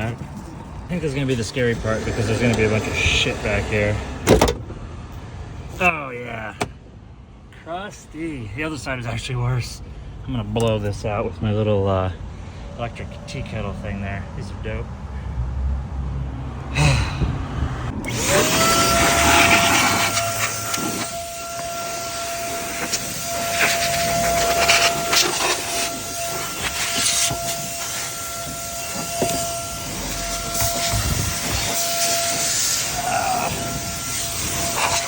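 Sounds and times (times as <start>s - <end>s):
rushing air: 0.3s - 4.3s, 16.5s - 35.0s
electric blower motor whine: 1.5s - 4.2s, 17.6s - 35.0s.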